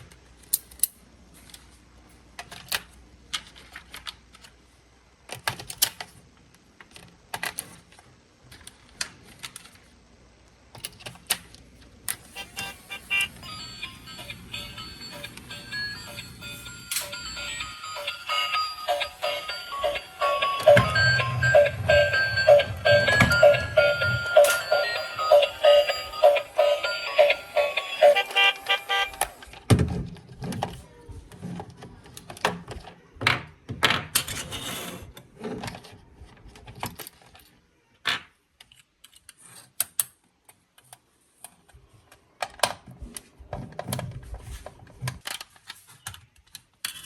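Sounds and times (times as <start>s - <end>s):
plastic toy parts clicking: 0.0s - 1.7s, 5.2s - 9.9s, 38.2s - 42.9s, 45.1s - 47.0s
electronic music with fast beat: 18.9s - 28.5s.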